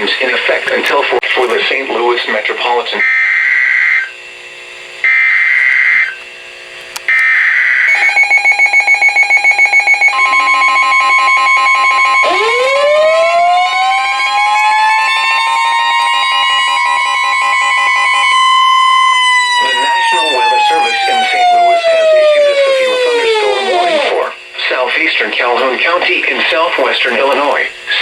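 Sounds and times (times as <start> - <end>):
siren wailing: 3.0 - 4.2, 5.0 - 6.2, 7.1 - 24.4.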